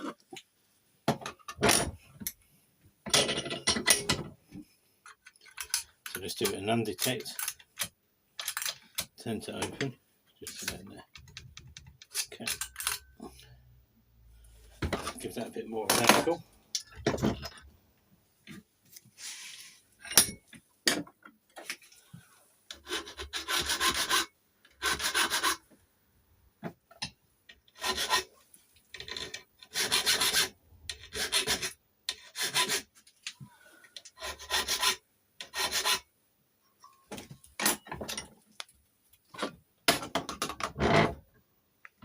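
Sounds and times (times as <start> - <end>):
hand file rasping on key: 22.7 - 25.6, 27.7 - 28.3, 29.7 - 32.9, 34.1 - 36.0.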